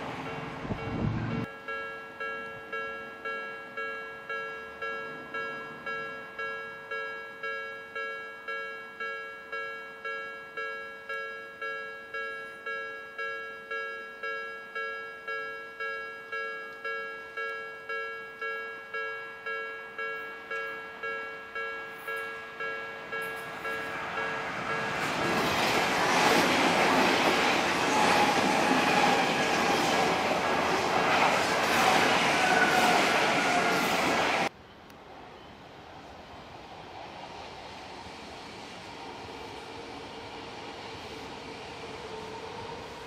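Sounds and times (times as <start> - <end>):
train noise: 0.0 - 9.6, 15.7 - 43.0
level crossing warning bell: 0.0 - 25.3.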